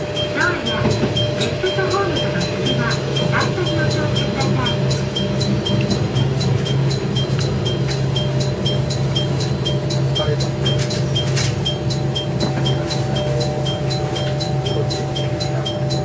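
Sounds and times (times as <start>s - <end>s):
railcar engine drone: 0.0s - 16.0s.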